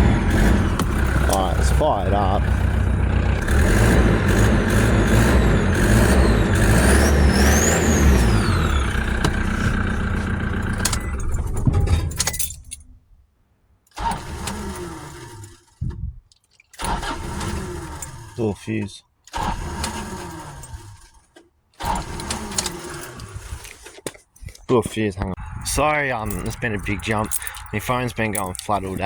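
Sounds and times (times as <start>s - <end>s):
diesel engine running: 0.0s - 12.8s, 25.3s - 29.0s.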